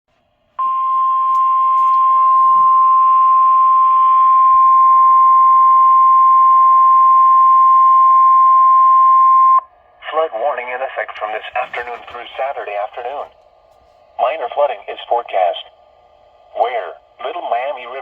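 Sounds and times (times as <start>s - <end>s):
high alarm beep: 0.6s - 9.7s
radio hiss: 10.0s - 15.8s, 16.5s - 18.0s.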